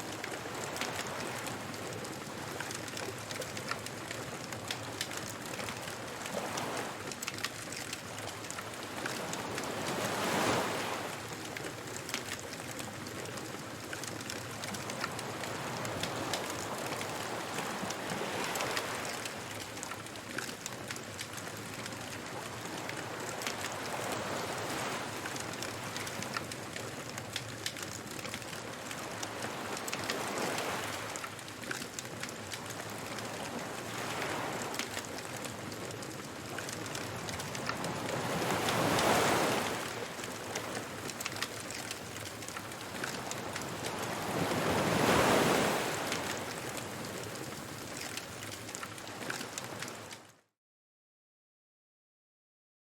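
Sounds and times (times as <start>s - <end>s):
bonfire crackling: 0.1s - 50.1s
ocean waves breaking: 4.8s - 11.4s, 14.5s - 19.9s, 21.2s - 26.6s, 27.8s - 31.3s, 32.2s - 50.2s.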